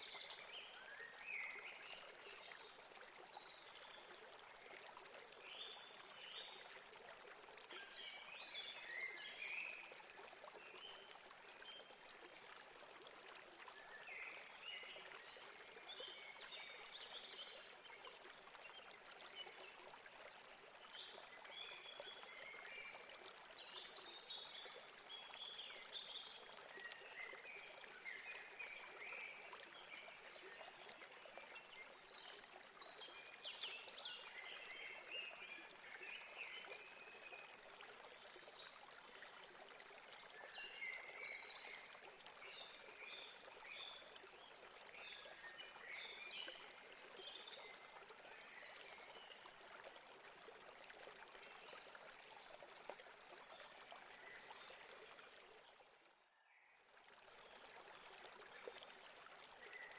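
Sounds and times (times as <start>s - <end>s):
river water running: 0.0s - 59.9s.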